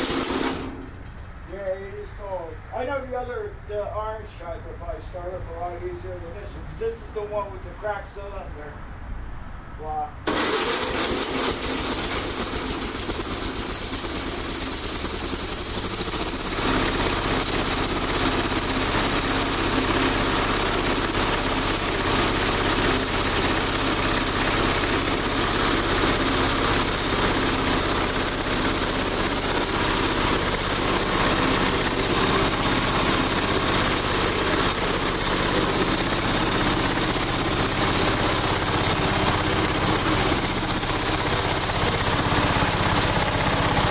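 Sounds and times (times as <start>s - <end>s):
walk-behind tractor engines running: 0.0s - 2.5s, 10.3s - 43.9s.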